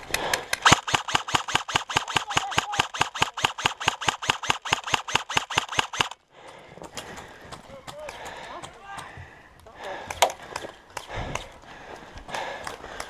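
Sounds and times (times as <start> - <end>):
airsoft gun rapid firing: 0.5 - 6.2.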